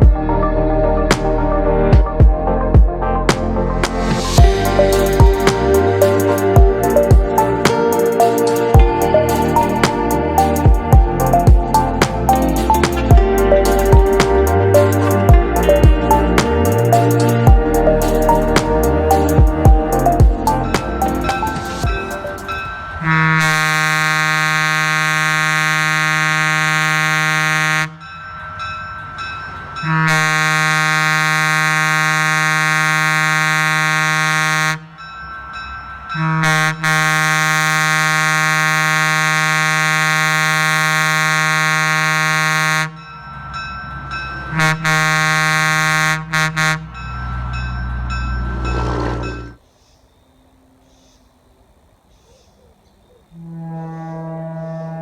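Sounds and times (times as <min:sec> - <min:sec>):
low rumble: 0:00.0 - 0:07.6
locomotive air horn: 0:12.5 - 0:28.0, 0:29.8 - 0:34.9, 0:36.2 - 0:43.0, 0:44.5 - 0:47.5, 0:53.4 - 0:55.0.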